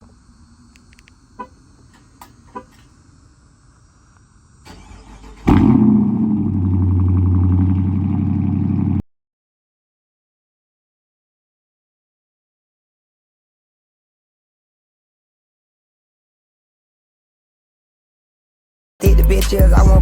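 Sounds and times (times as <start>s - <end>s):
faint clicks: 0.0s - 3.0s
loud car engine idling: 4.7s - 9.0s.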